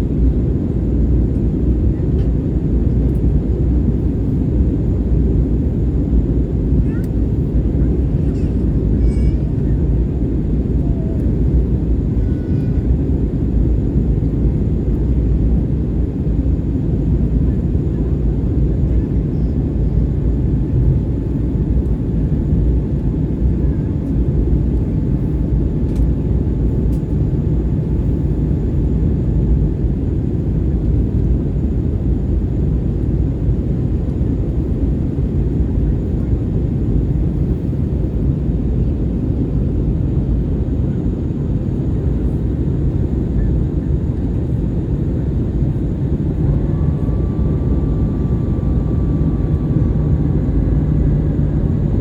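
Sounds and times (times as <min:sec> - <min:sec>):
airplane cabin low rumble: 0:00.0 - 0:52.0
faint steady whine: 0:17.1 - 0:52.0.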